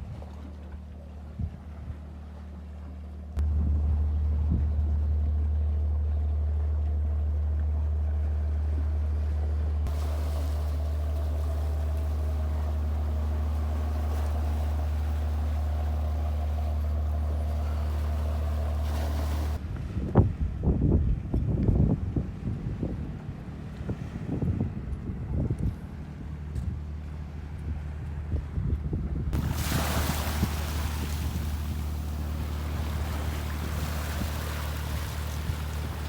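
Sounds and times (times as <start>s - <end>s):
motorboat engine running: 0.0s - 36.0s
rushing water hiss: 9.9s - 19.6s, 29.4s - 36.0s
wind buffeting microphone: 9.9s - 36.0s.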